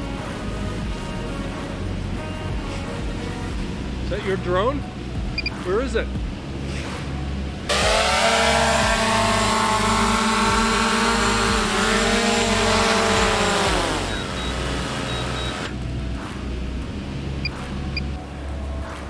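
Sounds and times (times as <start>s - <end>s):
drone propellers whining: 7.7s - 15.8s.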